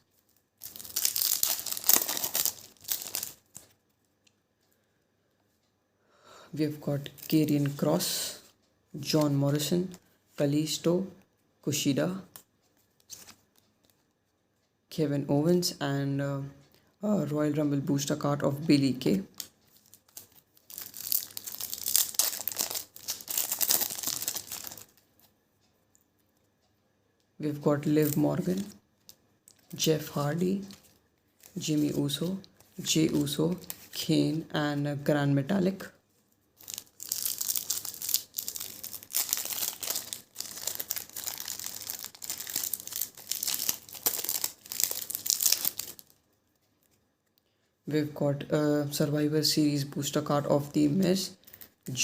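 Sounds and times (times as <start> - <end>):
plastic wrapper crinkling and tearing: 0.0 - 3.8, 19.3 - 25.0, 29.5 - 34.4, 36.6 - 47.0, 51.4 - 52.0.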